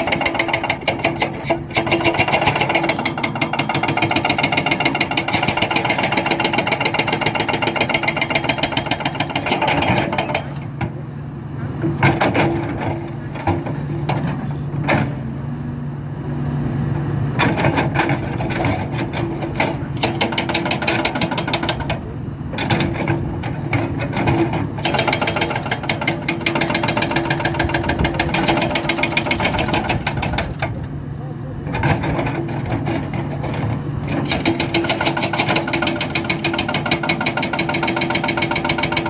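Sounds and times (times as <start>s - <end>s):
hydraulic breaker hammering: 0.0s - 10.9s, 17.4s - 30.9s, 31.7s - 39.0s
excavator engine running: 0.0s - 39.0s.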